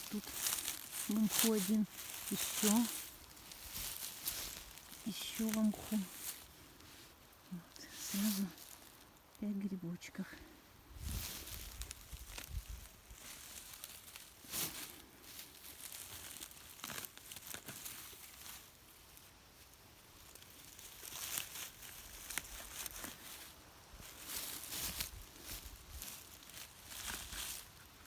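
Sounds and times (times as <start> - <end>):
rustling and crackling undergrowth: 0.0 - 28.0
sharp snaps and crunches: 11.0 - 18.8, 20.1 - 28.0.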